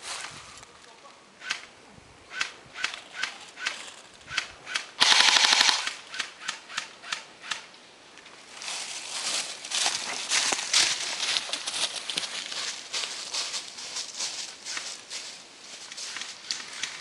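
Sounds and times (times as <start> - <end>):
airsoft gun single shots: 4.4 - 7.6
airsoft full-auto burst: 4.7 - 6.3.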